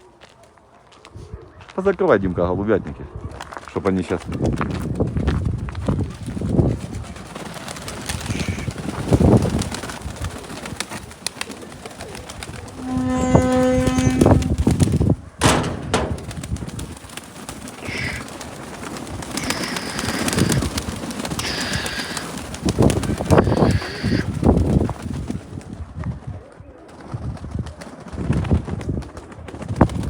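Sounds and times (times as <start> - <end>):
wind buffeting microphone: 4.1 - 11.2, 12.3 - 17.2, 19.0 - 26.4, 27.1 - 30.0
pigeons cooing: 6.8 - 14.6, 17.4 - 24.9
steady pitched tone: 12.8 - 16.6.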